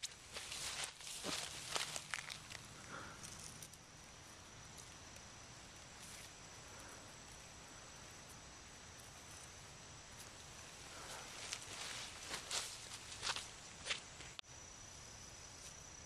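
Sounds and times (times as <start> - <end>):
high-pitched insect drone: 0.3 - 16.0
faint rustles: 9.0 - 14.0.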